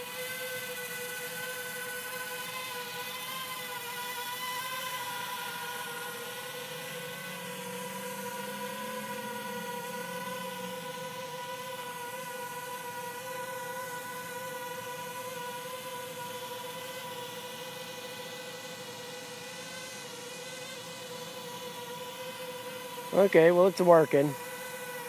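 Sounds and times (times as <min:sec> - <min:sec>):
drone propellers whining: 0:04.6 - 0:13.2, 0:18.0 - 0:25.0.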